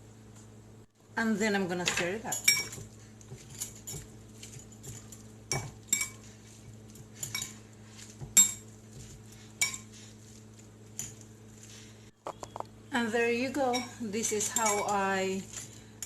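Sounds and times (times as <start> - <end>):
utensil clinking against a bowl: 1.9 - 6.3, 6.9 - 10.0, 13.6 - 16.0.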